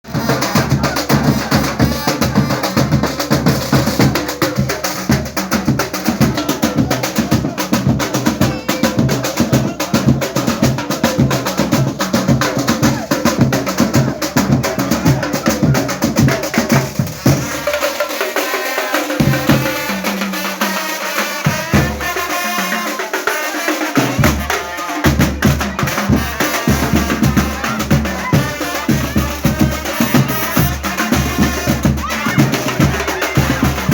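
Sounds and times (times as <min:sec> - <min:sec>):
loud music with fast drum beat: 0:00.0 - 0:33.9.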